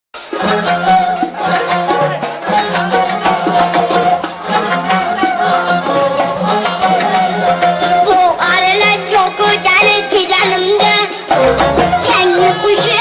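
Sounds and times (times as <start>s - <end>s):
music with a steady beat: 5.2s - 13.0s.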